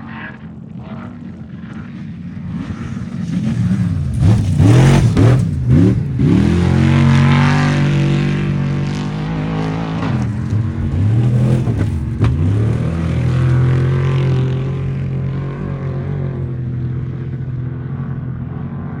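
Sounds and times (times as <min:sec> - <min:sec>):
truck engine revving: 0:02.6 - 0:16.2.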